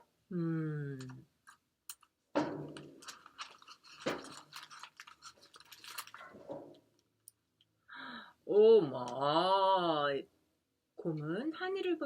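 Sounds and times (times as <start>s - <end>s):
crinkly rustling: 2.7s - 7.0s.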